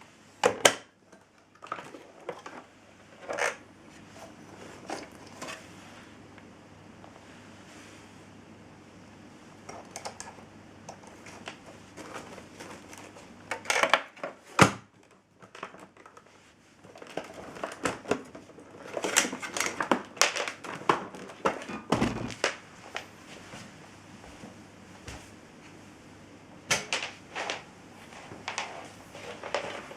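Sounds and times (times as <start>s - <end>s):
crinkling rustles: 11.0s - 21.7s, 27.0s - 29.9s.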